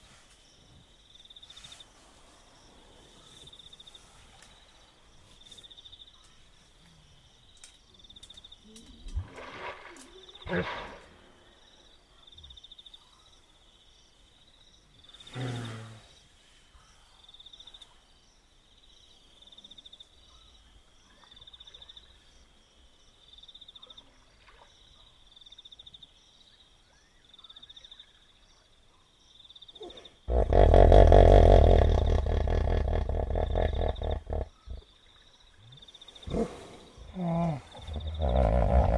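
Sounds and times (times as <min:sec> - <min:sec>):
hippopotamus grunting: 0:29.8 - 0:34.8, 0:36.2 - 0:38.9.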